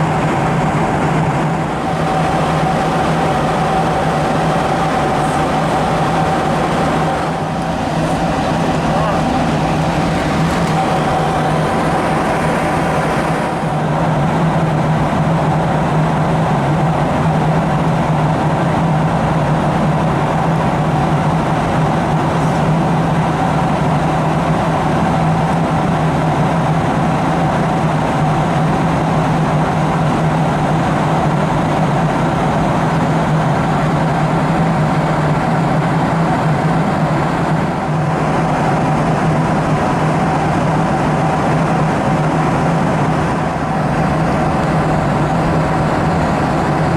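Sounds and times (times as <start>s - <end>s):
aircraft cabin engine and air noise: 0.0s - 46.9s
higher steady tone: 1.6s - 13.9s.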